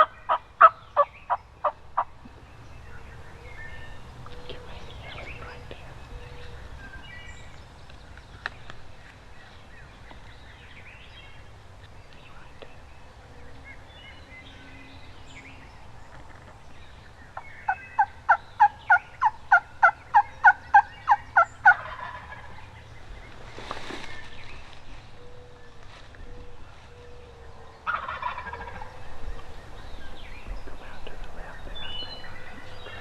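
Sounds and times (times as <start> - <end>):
turkey yelping: 0.0 - 2.1, 18.0 - 22.5, 27.9 - 28.9.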